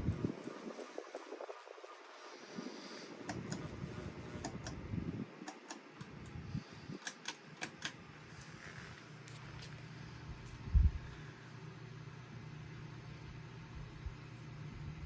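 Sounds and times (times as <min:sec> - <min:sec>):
ceiling fan rumbling: 0:00.0 - 0:15.0
sharp clicks: 0:03.3 - 0:03.7, 0:05.5 - 0:06.4, 0:07.0 - 0:08.0.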